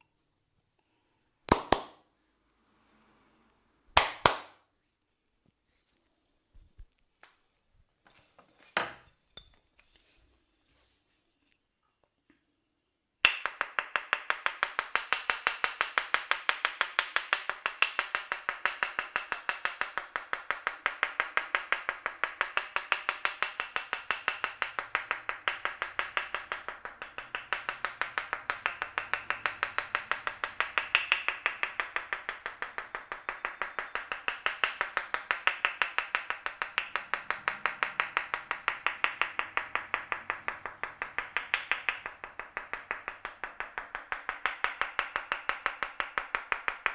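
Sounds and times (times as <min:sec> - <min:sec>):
percussive massage strikes: 0:01.5 - 0:02.0, 0:04.0 - 0:04.6, 0:13.2 - 0:46.9.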